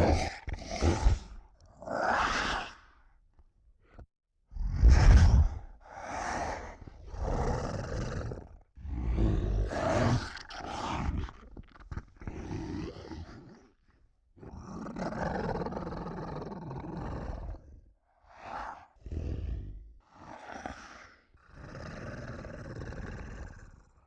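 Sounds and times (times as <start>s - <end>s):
monster roars and growls: 0.0s - 3.0s, 4.6s - 13.4s.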